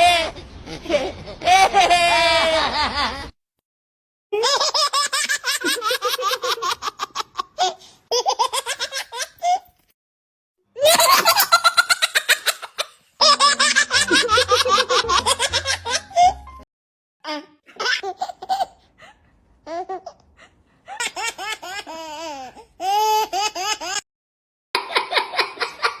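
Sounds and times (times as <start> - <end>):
baby giggling and laughing: 10.8 - 16.6, 17.3 - 20.2.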